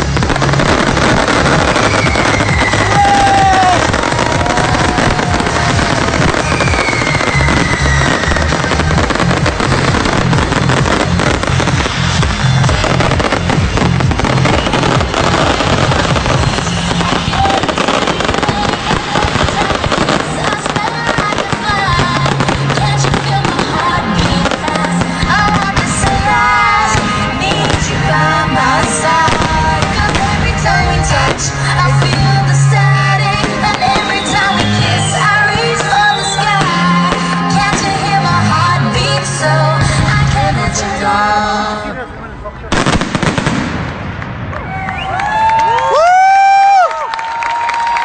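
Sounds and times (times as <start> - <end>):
music with heavy bass: 0.0 - 41.9
fireworks crackling and bursting: 0.0 - 48.0
firework whistle gliding down: 0.8 - 8.8.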